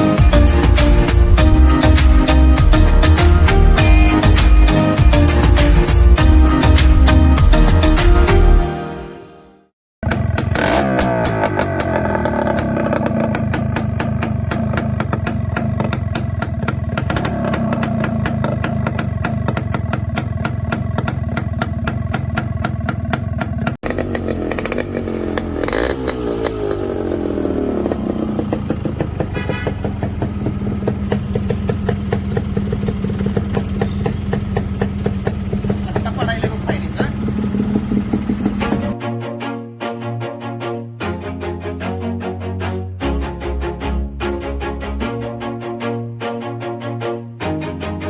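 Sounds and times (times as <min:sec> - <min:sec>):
motorcycle engine running: 0:00.0 - 0:07.6, 0:10.0 - 0:39.0.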